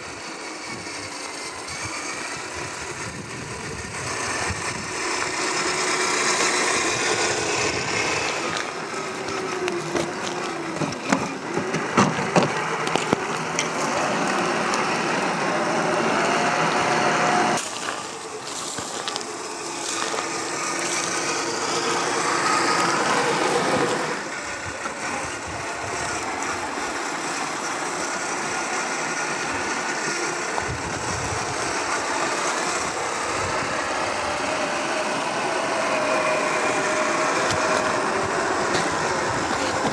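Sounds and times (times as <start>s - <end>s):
rc car electric motors whining: 0.0s - 39.9s.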